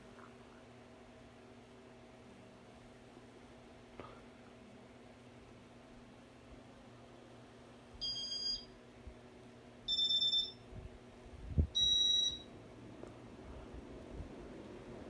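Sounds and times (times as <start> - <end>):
electronic beeps: 9.9 - 10.6, 11.8 - 12.4.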